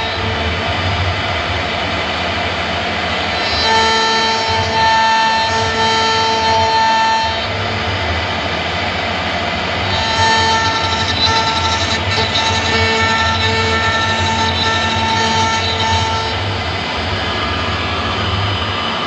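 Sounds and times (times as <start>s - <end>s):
router spindle whine: 0.0s - 19.0s
router bit cutting wood: 9.9s - 16.4s.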